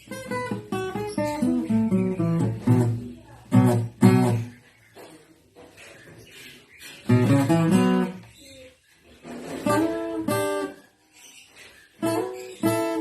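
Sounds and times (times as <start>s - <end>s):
acoustic guitar strumming: 0.0s - 4.6s, 7.0s - 8.3s, 9.2s - 10.8s, 12.0s - 13.0s.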